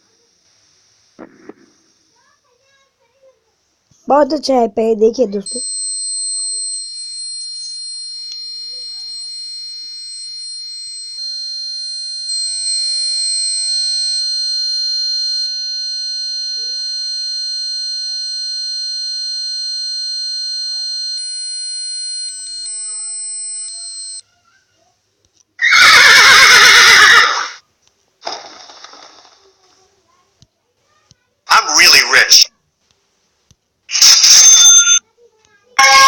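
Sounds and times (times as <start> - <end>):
electronic alarm ringing: 5.4 - 24.2, 33.9 - 35.0, 35.8 - 36.0.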